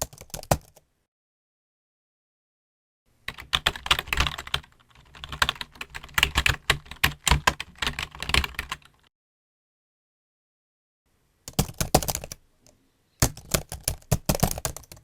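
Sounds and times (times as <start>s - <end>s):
typing on computer keyboard: 0.0s - 0.8s, 3.3s - 9.1s, 11.5s - 12.4s, 13.2s - 15.0s.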